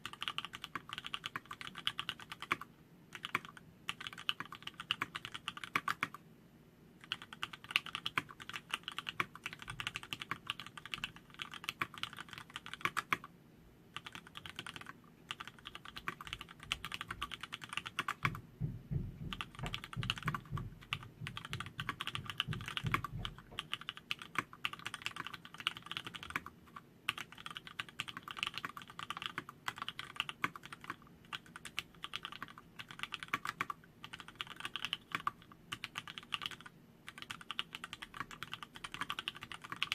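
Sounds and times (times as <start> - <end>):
mechanical keyboard fast typing: 0.0 - 6.2, 7.0 - 13.3, 14.0 - 18.4, 19.2 - 39.9.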